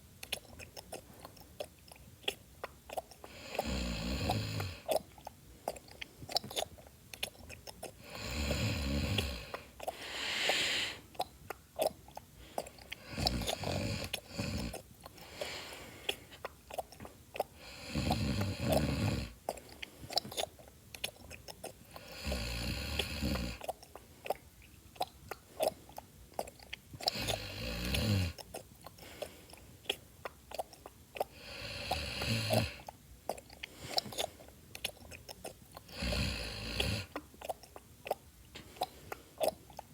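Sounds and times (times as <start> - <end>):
close-up wet chewing: 0.0 - 39.9
low snore: 3.3 - 4.9, 8.0 - 11.0, 13.0 - 14.8, 17.6 - 19.4, 22.0 - 23.6, 27.1 - 28.4, 31.4 - 32.8, 35.9 - 37.1.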